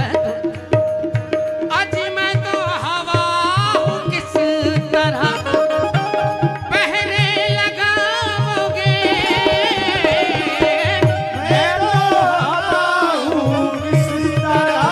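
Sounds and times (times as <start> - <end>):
tabla strokes: 0.0 - 14.9.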